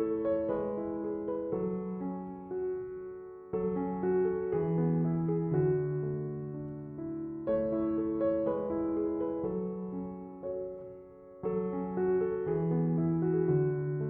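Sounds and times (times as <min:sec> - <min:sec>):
slow piano chords: 0:00.0 - 0:14.0.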